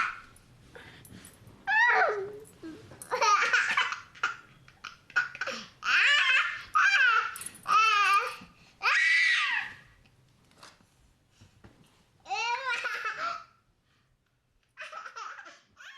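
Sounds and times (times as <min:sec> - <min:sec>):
baby laughing: 0:03.1 - 0:07.3, 0:14.8 - 0:15.9.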